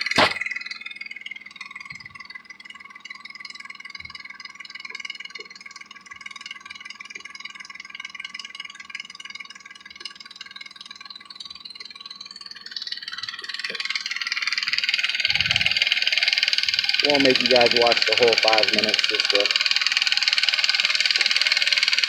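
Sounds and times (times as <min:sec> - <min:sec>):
car engine idling: 0:12.6 - 0:22.0.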